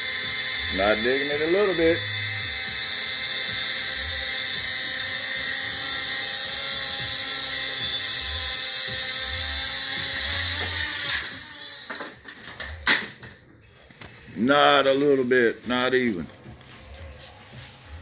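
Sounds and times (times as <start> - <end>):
toy drone propellers whirring: 0.0 - 13.0.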